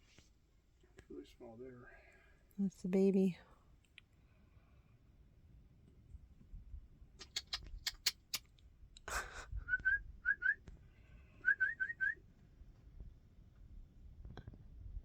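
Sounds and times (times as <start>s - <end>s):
sharp clicks: 7.2s - 8.6s.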